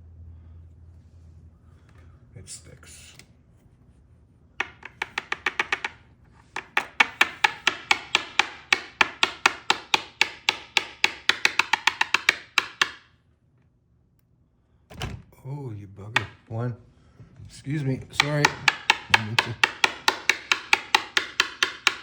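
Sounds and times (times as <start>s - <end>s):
rapid sharp taps on metal: 4.6s - 6.0s, 6.6s - 13.1s, 18.2s - 22.0s.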